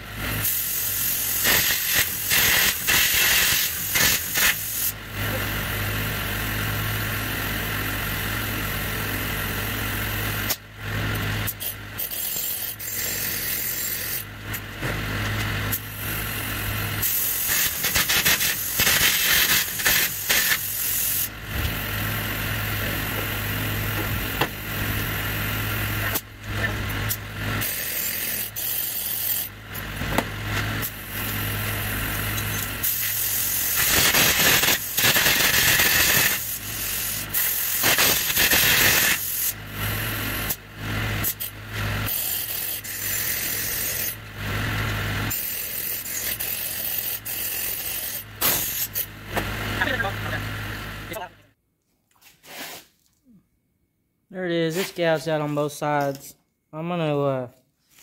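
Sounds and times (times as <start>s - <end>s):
steady low hum: 0.0s - 51.6s
compressed air hissing: 0.3s - 5.4s, 17.0s - 22.2s, 32.8s - 40.5s
electric arc crackling: 0.8s - 4.9s, 16.2s - 22.5s, 31.1s - 40.5s.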